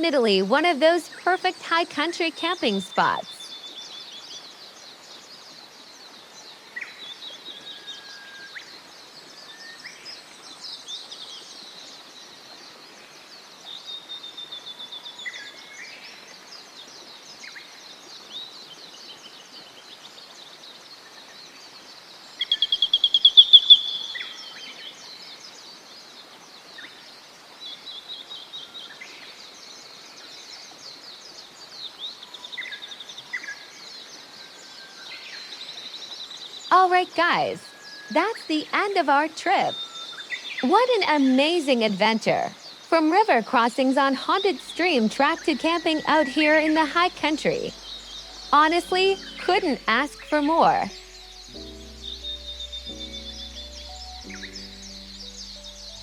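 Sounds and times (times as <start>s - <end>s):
birds calling and singing: 0.0s - 12.9s, 30.6s - 56.0s
bird rapid repeated notes: 36.7s - 39.8s, 40.6s - 53.5s.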